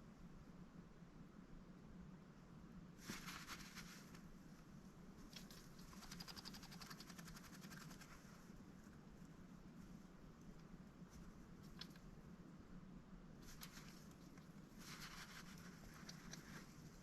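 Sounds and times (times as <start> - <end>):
low room hum: 0.0 - 17.0
duck bill clicking: 5.4 - 8.1.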